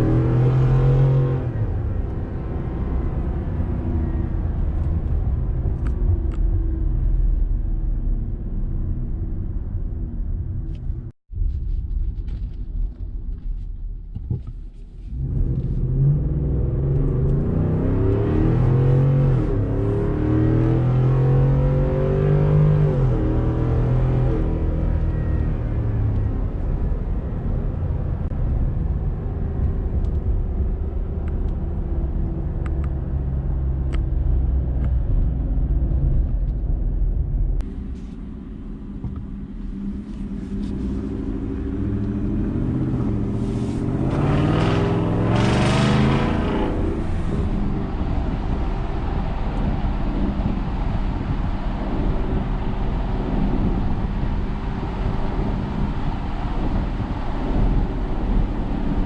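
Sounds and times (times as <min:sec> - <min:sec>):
truck engine accelerating: 0:37.6 - 0:59.0.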